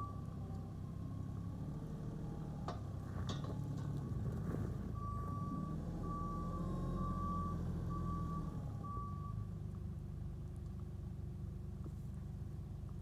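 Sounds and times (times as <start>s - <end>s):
diesel engine running: 0.0s - 13.0s
reversing alarm beeping: 5.0s - 9.4s.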